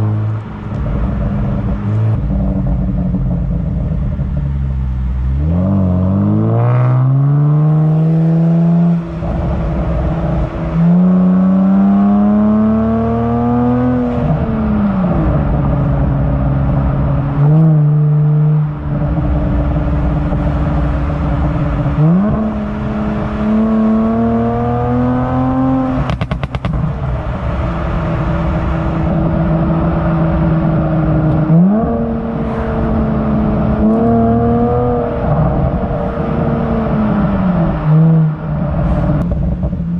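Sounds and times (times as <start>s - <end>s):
car exhaust accelerating: 0.0s - 39.9s
exhaust crackles and pops: 25.9s - 27.2s.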